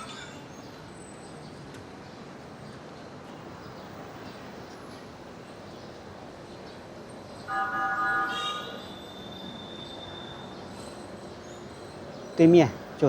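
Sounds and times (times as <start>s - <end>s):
city street traffic hum: 0.0s - 13.0s.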